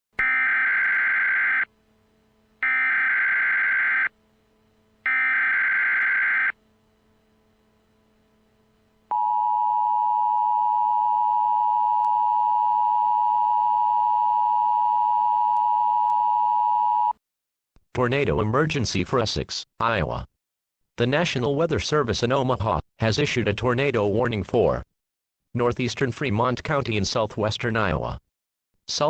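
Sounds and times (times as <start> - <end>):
steady attention tone: 0.2 - 14.7.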